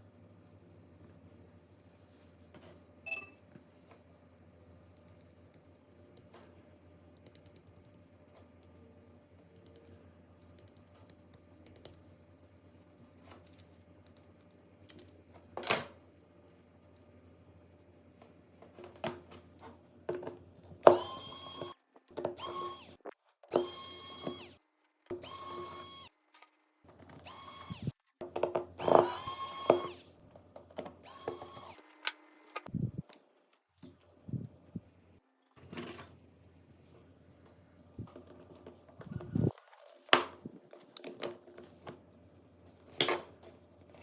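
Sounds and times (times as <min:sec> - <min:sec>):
power tool motor whine: 0:22.4 - 0:24.6, 0:27.2 - 0:27.9, 0:28.8 - 0:30.2, 0:31.0 - 0:31.9.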